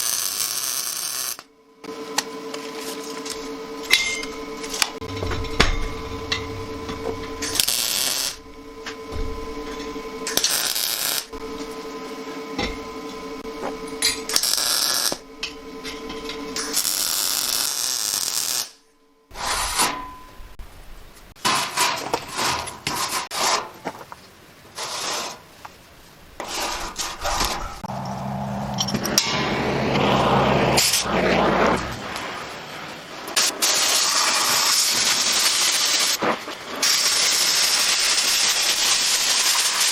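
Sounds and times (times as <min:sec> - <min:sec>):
machine hum: 0:01.5 - 0:19.3, 0:26.2 - 0:33.4
low motor drone: 0:01.6 - 0:17.6, 0:27.2 - 0:33.4
metal clanks and rasps: 0:03.8 - 0:11.4, 0:21.4 - 0:24.3, 0:26.4 - 0:30.2
loud hissing cutting: 0:06.5 - 0:09.4.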